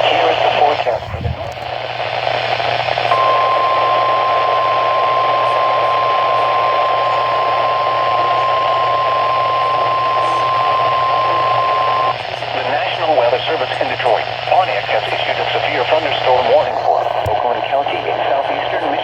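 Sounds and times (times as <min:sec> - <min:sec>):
radio static hiss: 0:00.0 - 0:19.0
steady alarm tone: 0:03.1 - 0:12.1.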